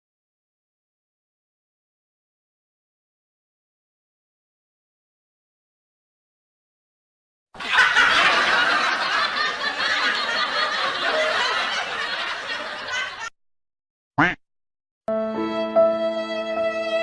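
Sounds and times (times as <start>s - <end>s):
crowd laughing: 7.6s - 13.3s.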